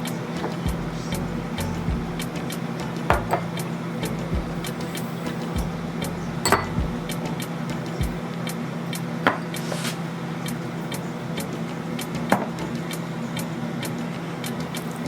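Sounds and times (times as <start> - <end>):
steady low hum: 0.0 - 15.0
utensils knocking against bowl: 3.1 - 3.6, 6.4 - 6.8.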